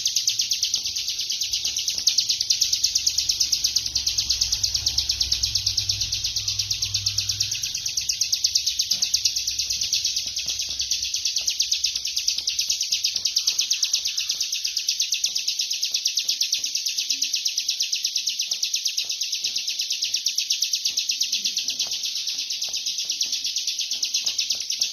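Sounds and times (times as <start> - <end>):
bird trilling: 0.0 - 24.9.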